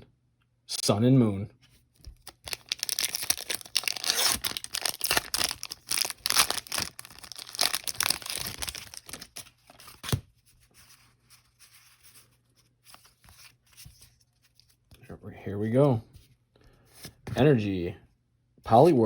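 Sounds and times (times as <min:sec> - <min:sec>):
foil wrapper tearing and crinkling: 0:02.2 - 0:10.2.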